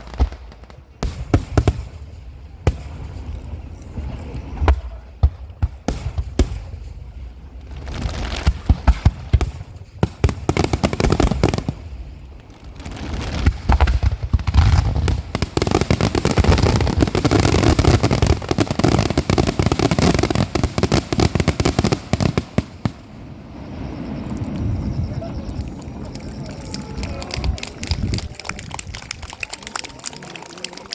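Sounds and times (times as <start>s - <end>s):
fireworks bangs and booms: 0.0s - 29.1s
fireworks crackling: 0.0s - 30.9s.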